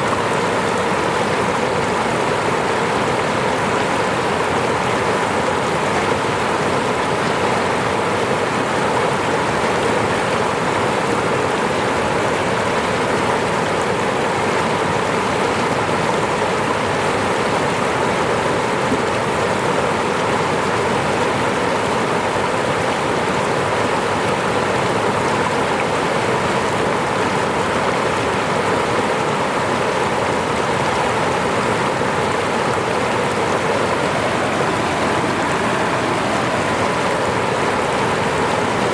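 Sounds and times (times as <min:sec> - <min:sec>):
falling water rushing: 0:00.0 - 0:38.9.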